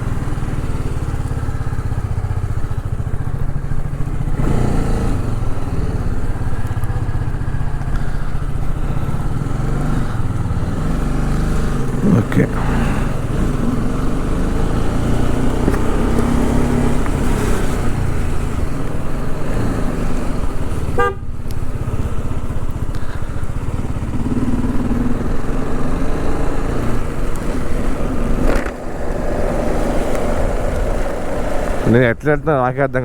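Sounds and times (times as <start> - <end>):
motorcycle engine riding: 0.0 - 33.0
wind rumble: 0.8 - 32.3
motorcycle horn toot: 20.9 - 21.4.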